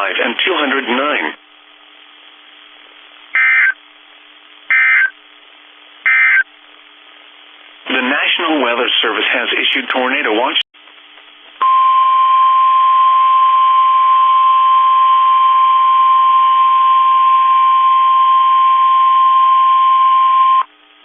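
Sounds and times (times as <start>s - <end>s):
faint radio hiss: 0.0s - 11.6s
steady high alarm beep: 3.4s - 3.8s, 4.7s - 5.1s, 6.1s - 6.4s.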